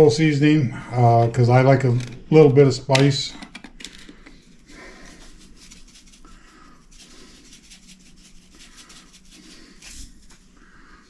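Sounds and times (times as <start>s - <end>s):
seasoning shaker rattling: 4.5s - 10.3s.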